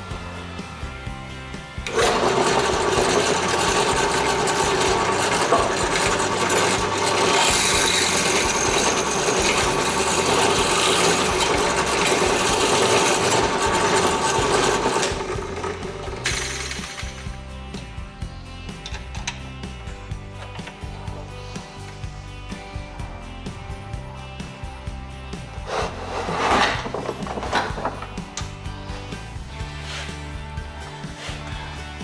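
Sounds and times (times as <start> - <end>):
background music: 0.0 - 32.0
power tool motor running: 1.9 - 17.3, 25.7 - 28.1.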